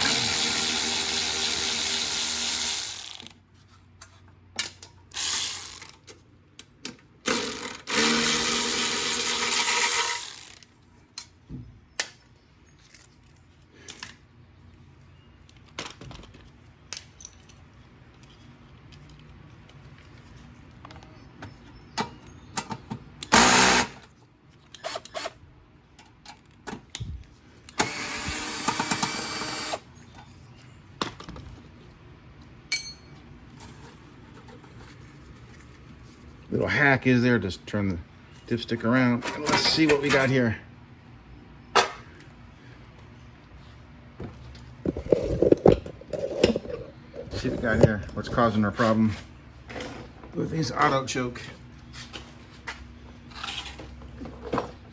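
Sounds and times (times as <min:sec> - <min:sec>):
electric ratchet whirring: 0:00.0 - 0:03.4, 0:05.1 - 0:06.0, 0:07.2 - 0:10.7, 0:23.2 - 0:24.0, 0:27.7 - 0:29.9
tools clattering: 0:32.7 - 0:34.5.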